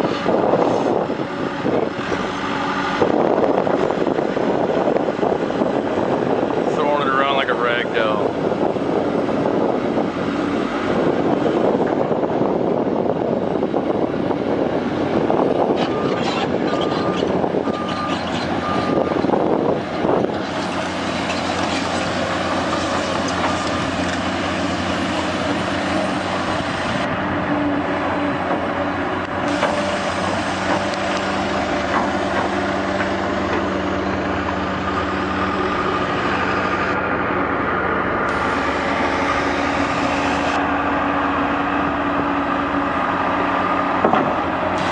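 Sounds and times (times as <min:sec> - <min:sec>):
heavy machinery engines running: 0:00.0 - 0:44.9
short beeps: 0:15.9 - 0:19.2.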